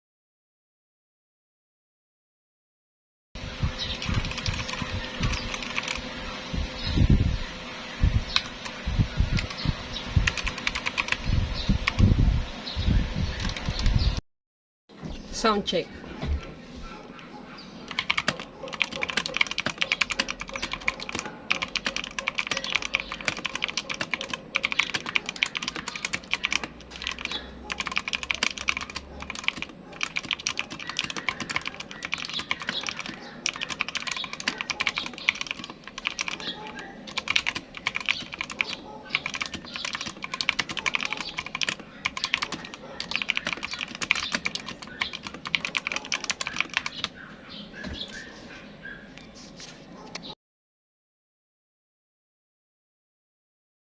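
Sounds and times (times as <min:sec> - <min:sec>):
mechanical keyboard typing: 0:03.7 - 0:06.1, 0:08.2 - 0:12.2, 0:13.3 - 0:14.1, 0:17.9 - 0:47.2.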